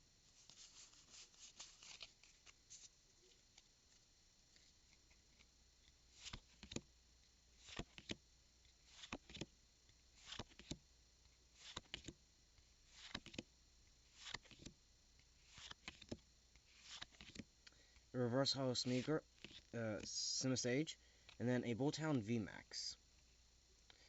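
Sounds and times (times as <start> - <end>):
trading cards flipped through: 0.4 - 3.7, 6.1 - 6.8, 7.6 - 8.2, 8.9 - 9.5, 10.2 - 10.8, 11.6 - 12.2, 12.9 - 13.4, 14.1 - 14.7, 15.4 - 17.4, 18.8 - 19.7.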